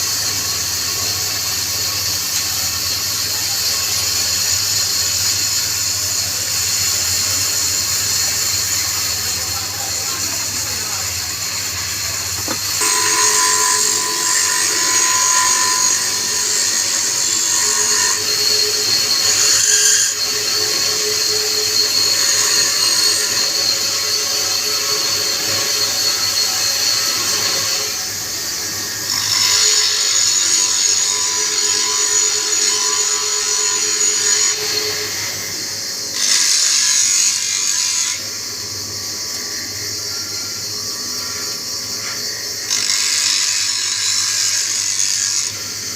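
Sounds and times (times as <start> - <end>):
tool cutting spinning wood: 0.0 - 38.2
wood lathe humming: 5.7 - 36.7.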